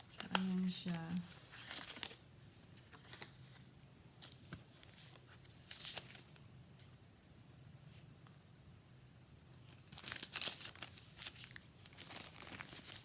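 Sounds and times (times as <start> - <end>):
plastic packaging crinkling: 0.0 - 2.2, 4.2 - 6.4, 9.7 - 13.0.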